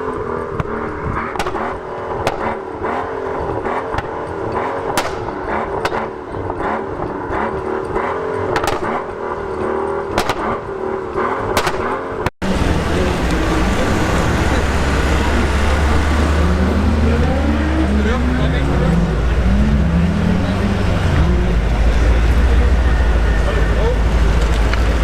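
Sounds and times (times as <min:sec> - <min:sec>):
car engine revving: 0:00.0 - 0:25.0
exhaust crackles: 0:00.0 - 0:25.0
low engine rumble: 0:12.4 - 0:25.0.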